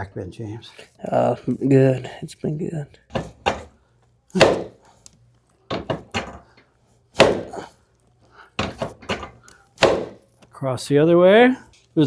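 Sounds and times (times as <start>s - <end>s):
knocks on treatment table: 3.1s - 3.7s, 4.4s - 4.8s, 5.7s - 6.4s, 7.2s - 7.6s, 8.6s - 10.2s.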